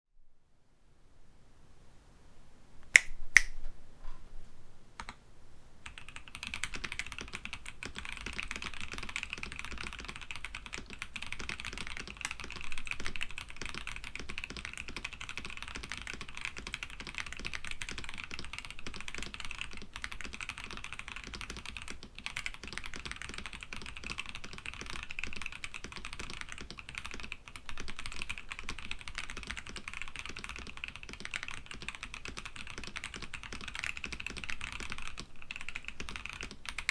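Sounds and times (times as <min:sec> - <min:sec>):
fast mechanical keyboard typing: 0:05.8 - 0:36.9.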